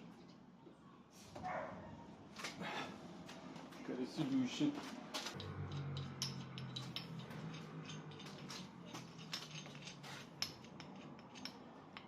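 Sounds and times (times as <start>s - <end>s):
metal tools clinking: 5.3s - 12.0s.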